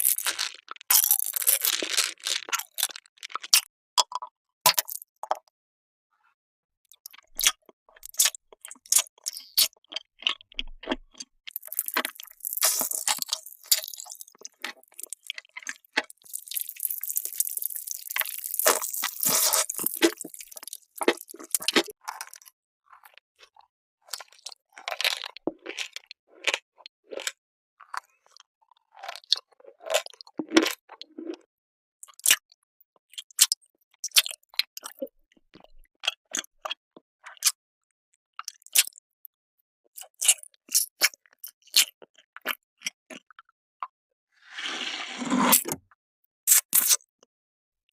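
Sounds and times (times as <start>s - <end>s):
crunching bites and chewing: 0.0s - 5.4s, 6.9s - 31.5s, 38.4s - 39.0s, 40.0s - 43.5s, 46.5s - 47.0s.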